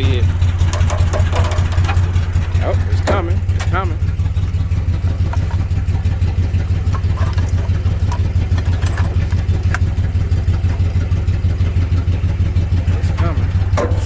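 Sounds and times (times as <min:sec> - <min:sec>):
engine idling: 0:00.0 - 0:14.0.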